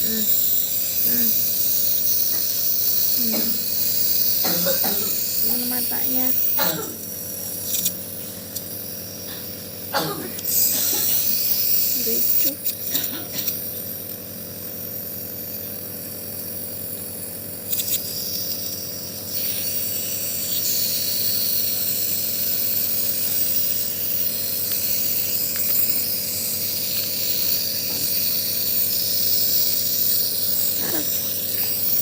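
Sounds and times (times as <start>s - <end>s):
hiss of medicine mist: 0.0s - 13.6s, 17.7s - 32.0s
nebulizer motor hum: 0.0s - 32.0s.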